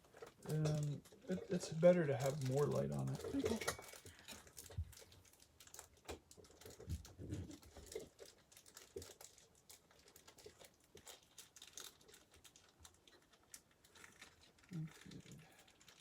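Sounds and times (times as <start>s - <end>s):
plastic bag crinkling: 0.0s - 16.0s.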